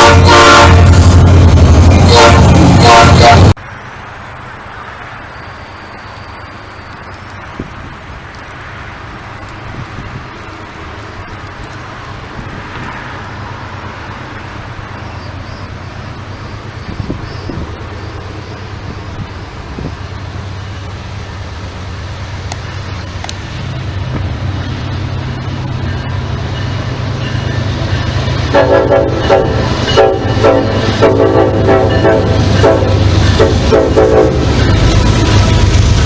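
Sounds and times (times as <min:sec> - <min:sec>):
train horn blasts: 0:00.0 - 0:01.2, 0:01.9 - 0:03.6, 0:28.5 - 0:34.6
train rumbling: 0:00.0 - 0:36.0.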